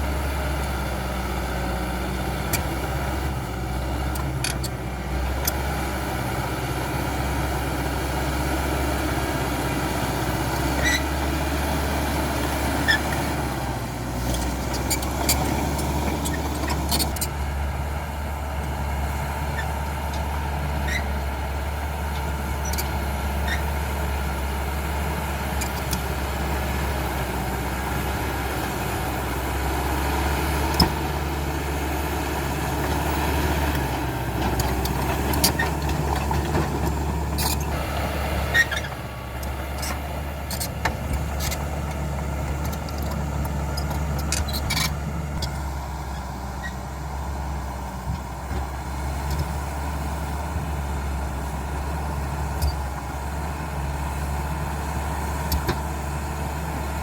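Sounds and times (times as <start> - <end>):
bulldozer diesel engine humming: 0.0 - 57.0.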